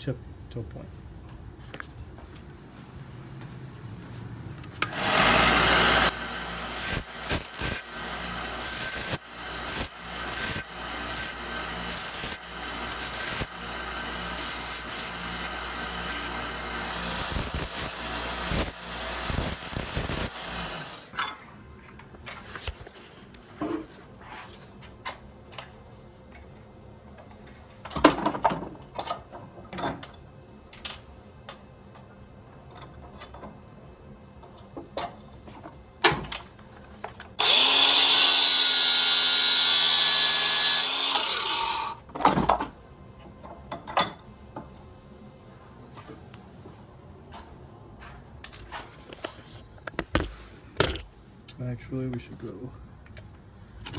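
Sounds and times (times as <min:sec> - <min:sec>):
belt sander grinding wire: 0:04.8 - 0:21.1, 0:37.4 - 0:42.0.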